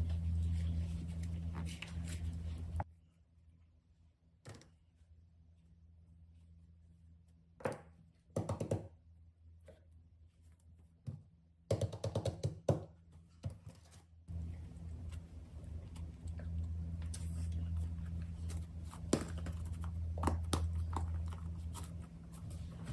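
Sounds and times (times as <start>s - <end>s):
low hum: 0.0s - 7.6s, 14.3s - 22.9s.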